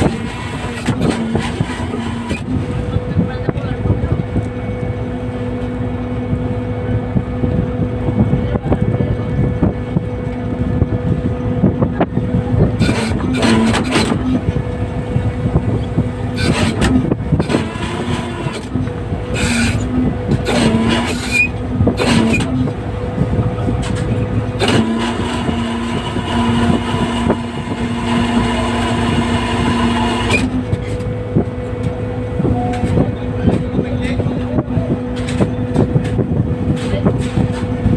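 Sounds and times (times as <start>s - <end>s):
boat engine humming: 0.0s - 37.9s
rushing clattering noise: 11.8s - 32.0s.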